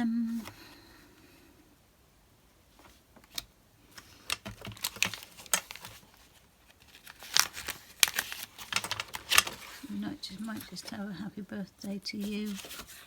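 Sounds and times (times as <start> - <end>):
paper rustling: 2.8 - 11.2, 11.8 - 13.0.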